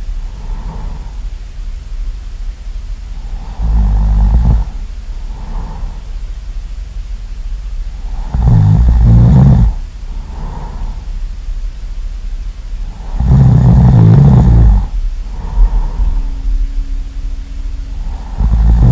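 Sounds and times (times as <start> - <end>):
soft breaths out: 0.0 - 1.4, 4.6 - 6.3, 9.6 - 11.3, 14.9 - 17.0
person snoring loudly: 0.3 - 1.2, 3.2 - 6.1, 8.0 - 11.1, 12.8 - 16.5, 18.0 - 18.9.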